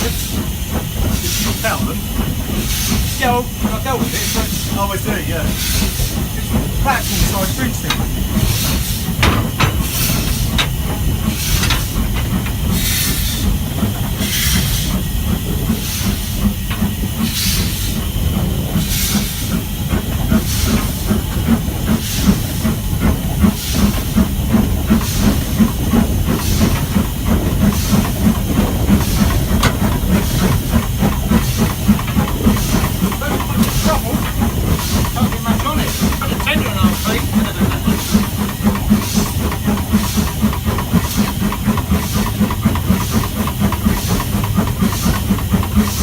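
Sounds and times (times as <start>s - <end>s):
steam locomotive hissing: 0.0s - 46.0s.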